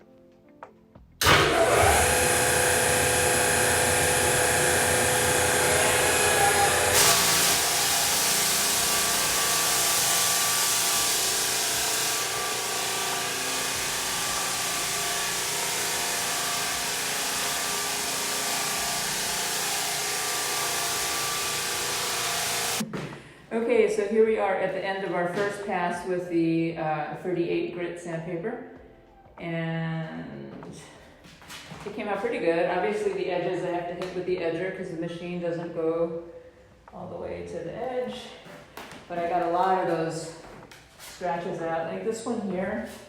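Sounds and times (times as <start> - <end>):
floor sander running: 1.2 - 22.8.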